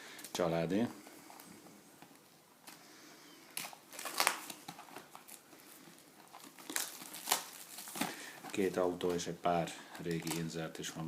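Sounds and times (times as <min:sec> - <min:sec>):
packaging crinkling and tearing: 0:03.5 - 0:11.0.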